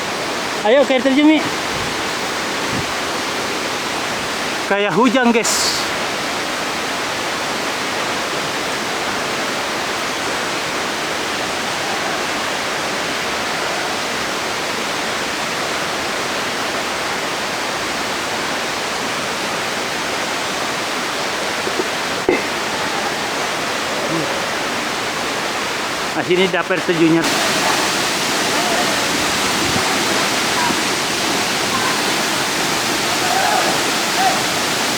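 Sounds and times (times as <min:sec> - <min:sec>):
waterfall pouring: 0:21.2 - 0:34.9.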